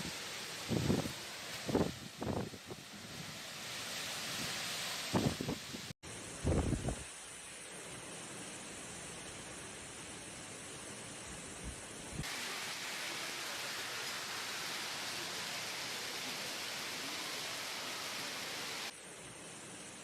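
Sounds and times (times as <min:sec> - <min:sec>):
violent storm rushing: 0:00.0 - 0:03.4.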